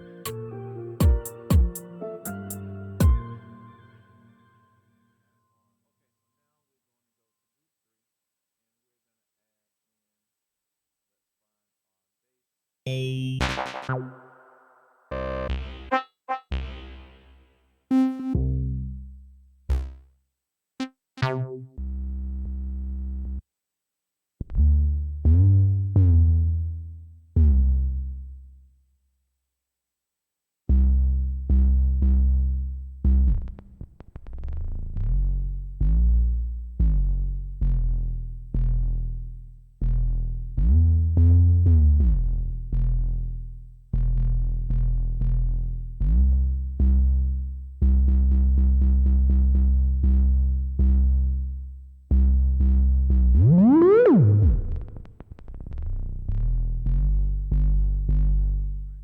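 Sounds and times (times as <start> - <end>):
heavy bass and synth notes: 0.0 - 4.0, 12.9 - 19.1, 30.8 - 43.4, 52.1 - 59.0.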